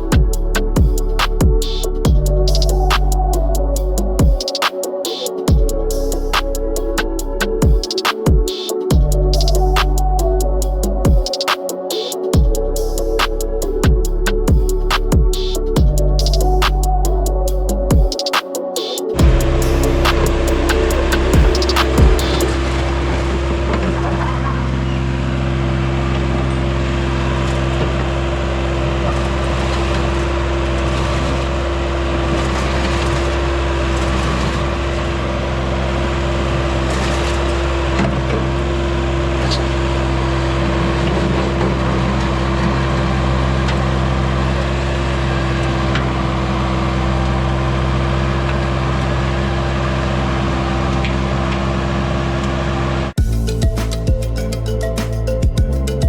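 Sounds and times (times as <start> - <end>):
diesel engine running: 19.2 - 53.8.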